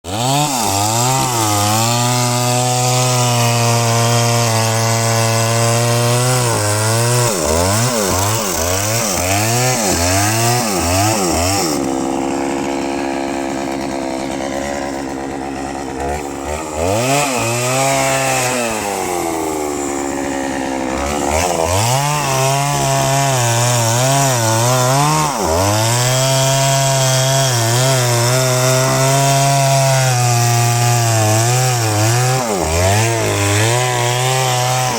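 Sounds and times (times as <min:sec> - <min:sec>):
chainsaw cutting wood: 0:00.0 - 0:34.9.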